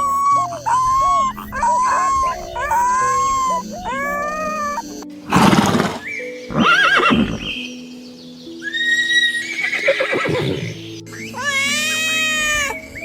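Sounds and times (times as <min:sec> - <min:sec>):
horse whinnying: 0:00.0 - 0:07.6, 0:08.6 - 0:10.8
soft background music: 0:00.0 - 0:13.0.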